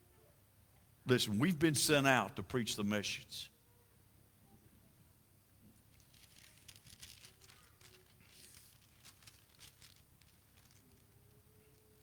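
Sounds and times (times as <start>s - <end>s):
thin paper rustling: 5.9s - 11.3s.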